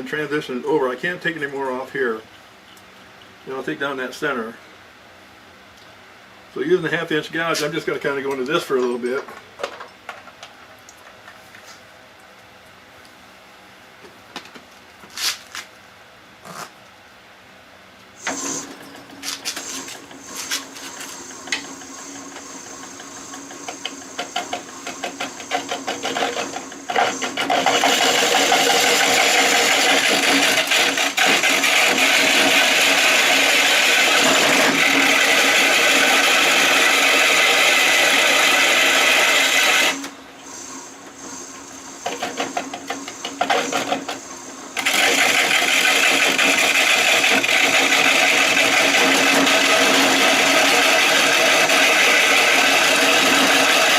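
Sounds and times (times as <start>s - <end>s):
lathe gouge shearing wood: 19.2s - 40.1s, 42.0s - 44.2s, 44.8s - 53.9s.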